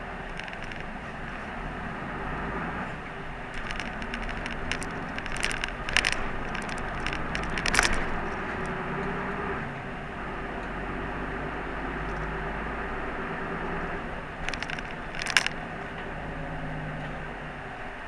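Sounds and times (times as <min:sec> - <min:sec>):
sharp clicks and rattles: 0:00.0 - 0:09.8, 0:11.6 - 0:16.5.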